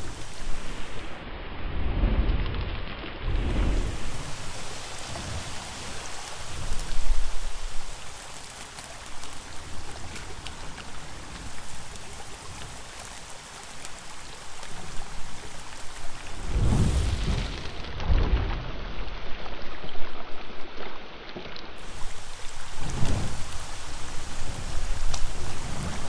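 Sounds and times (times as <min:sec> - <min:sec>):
rain pattering on surfaces: 0:00.0 - 0:01.3, 0:01.9 - 0:26.0
low rush: 0:16.2 - 0:17.9.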